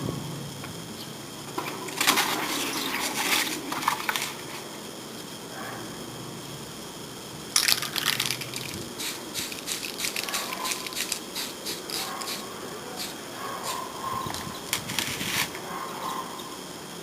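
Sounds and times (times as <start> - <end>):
aerosol spray can bursts: 7.6 - 15.5.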